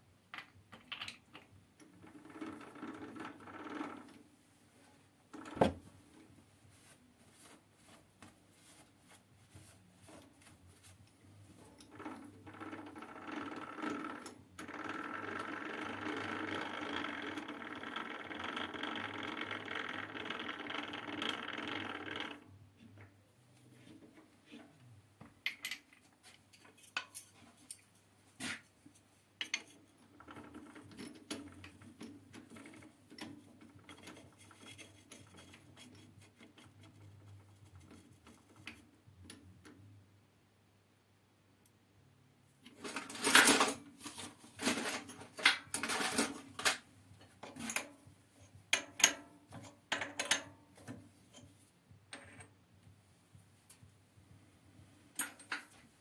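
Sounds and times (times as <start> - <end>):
sharp metallic clicks and knocks: 48.7 - 51.5.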